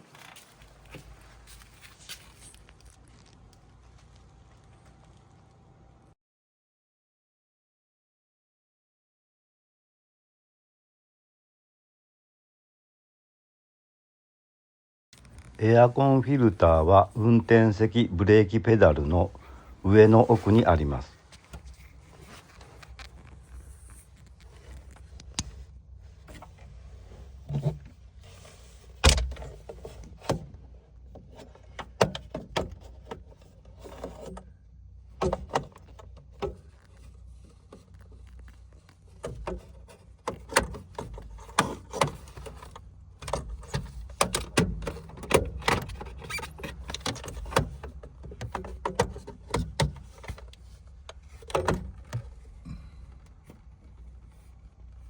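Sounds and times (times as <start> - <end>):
plastic parts clicking and rattling: 35.1 - 54.2.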